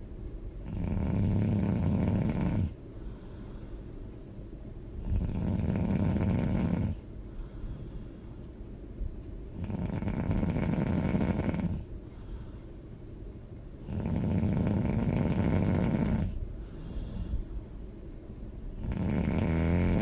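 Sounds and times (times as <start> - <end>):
person snoring: 0.6 - 2.8, 5.0 - 7.0, 9.6 - 11.8, 13.9 - 16.4, 18.8 - 20.0
quiet breathing: 0.6 - 20.0.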